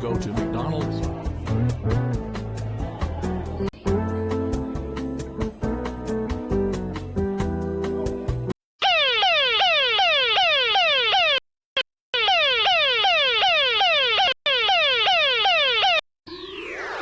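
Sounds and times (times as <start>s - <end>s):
fire alarm sweeping tone: 8.8s - 17.0s.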